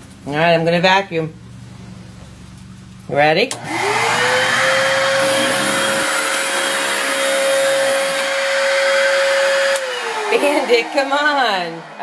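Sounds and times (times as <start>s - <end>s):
vacuum cleaner running: 3.5s - 12.0s.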